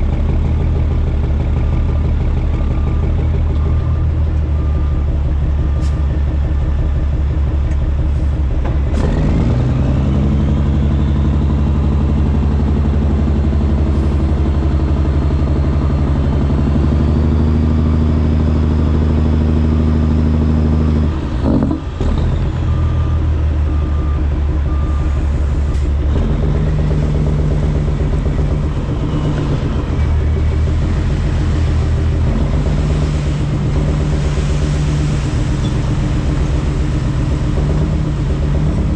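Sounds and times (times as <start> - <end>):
diesel engine running under load: 0.0 - 38.9
short beep: 22.7 - 25.2.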